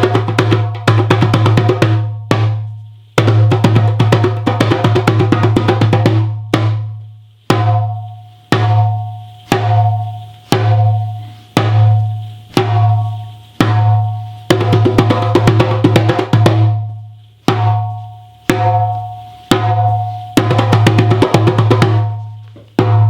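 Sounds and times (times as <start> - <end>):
drum strokes ringing: 0.0 - 23.0.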